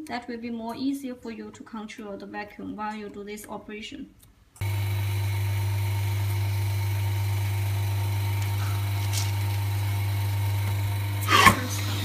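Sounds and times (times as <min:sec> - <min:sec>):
vacuum pump humming: 0:04.6 - 0:12.0.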